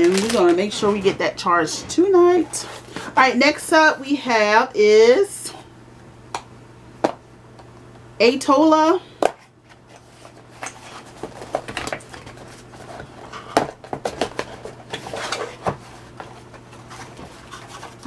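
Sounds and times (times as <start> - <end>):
cardboard box packaging rustling: 0.0 - 1.3, 2.0 - 3.3, 9.4 - 18.0.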